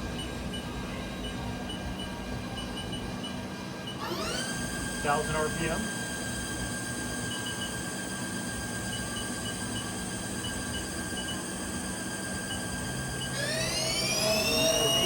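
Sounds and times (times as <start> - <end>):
lathe spindle whining: 3.0 - 15.0.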